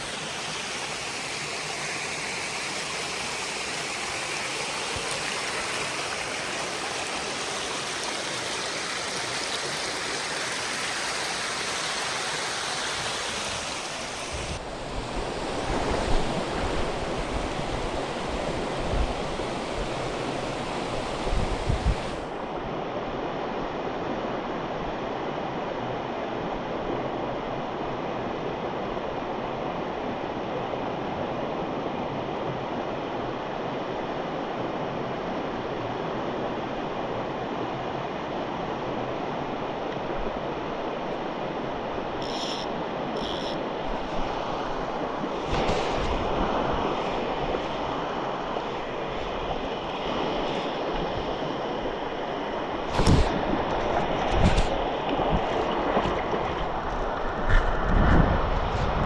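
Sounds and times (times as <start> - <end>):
stream water rushing: 0.0 - 59.0.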